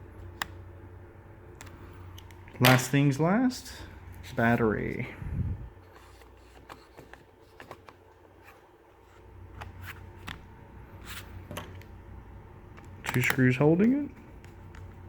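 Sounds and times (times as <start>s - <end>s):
steady low hum: 0.0s - 15.0s
laptop battery clicks and handling: 12.8s - 14.9s.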